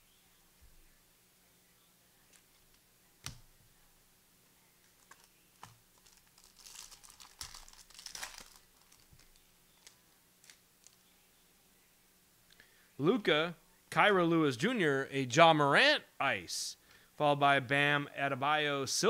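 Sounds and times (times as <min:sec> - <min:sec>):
wrapper crinkling and tearing: 0:05.0 - 0:11.0.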